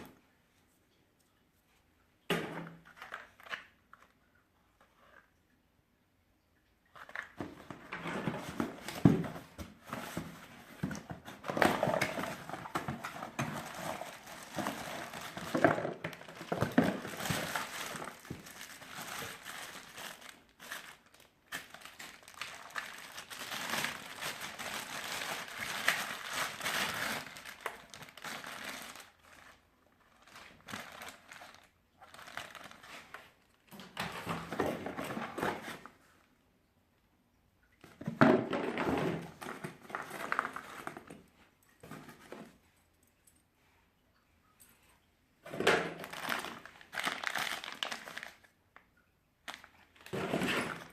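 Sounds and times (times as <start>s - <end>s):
packaging crinkling and rustling: 2.8s - 4.2s, 7.0s - 36.1s, 37.8s - 42.6s, 45.4s - 48.6s, 49.4s - 50.9s.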